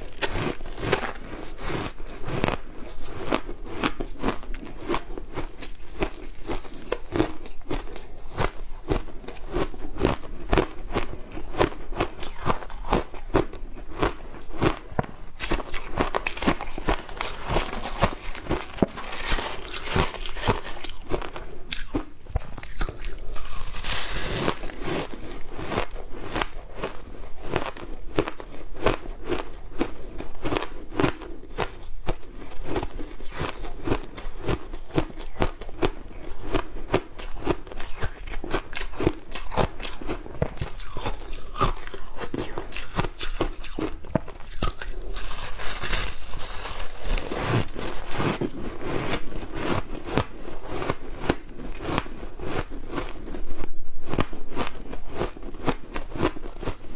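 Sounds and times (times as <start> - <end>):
ice being crunched: 15.4 - 25.1, 44.5 - 48.4.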